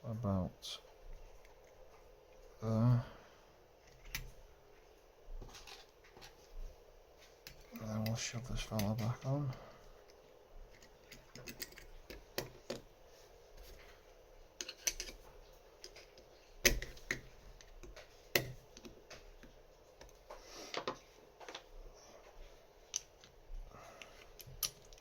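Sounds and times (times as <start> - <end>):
small metal parts clicking: 10.7 - 12.8, 14.6 - 15.2, 24.0 - 25.0.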